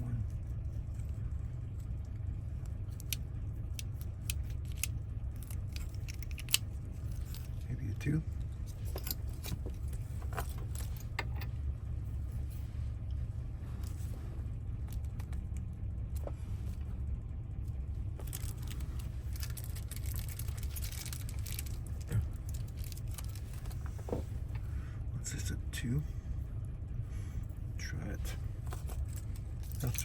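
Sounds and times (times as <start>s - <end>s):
steady low hum: 0.0s - 30.0s
small metal parts clicking: 2.9s - 7.6s, 18.2s - 23.8s, 28.7s - 30.0s.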